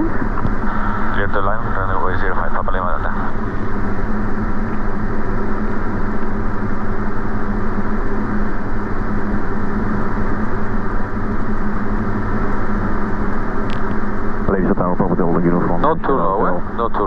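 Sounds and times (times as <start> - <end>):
propeller plane engine droning: 0.0 - 17.0.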